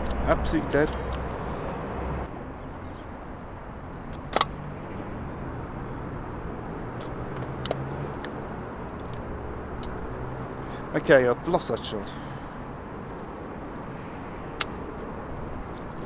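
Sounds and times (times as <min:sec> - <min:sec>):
sharp clicks: 0:00.0 - 0:02.3, 0:04.1 - 0:04.7, 0:14.6 - 0:16.0
distant road traffic rumble: 0:00.0 - 0:16.0.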